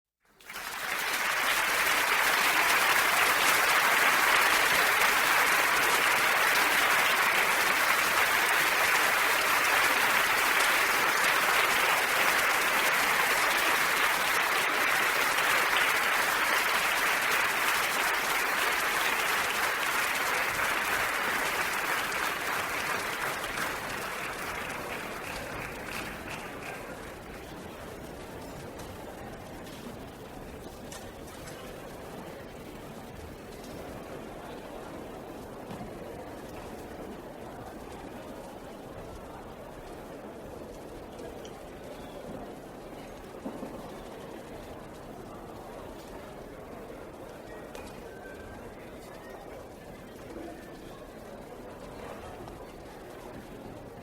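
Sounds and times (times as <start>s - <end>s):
audience applauding: 0.4s - 27.8s.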